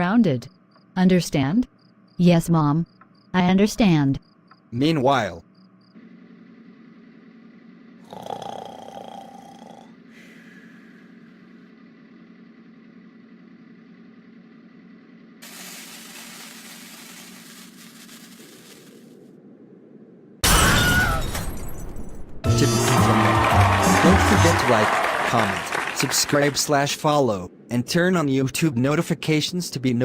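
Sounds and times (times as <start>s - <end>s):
faint steady hum: 0.0s - 20.4s, 24.1s - 30.0s
crash of something breaking: 20.4s - 22.4s
loud music: 22.5s - 25.0s
crowd cheering: 22.5s - 27.2s.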